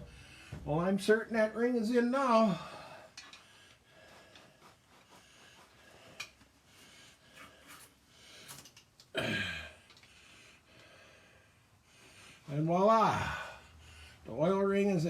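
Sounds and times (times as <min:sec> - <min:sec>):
man grunting: 0:09.2 - 0:09.8.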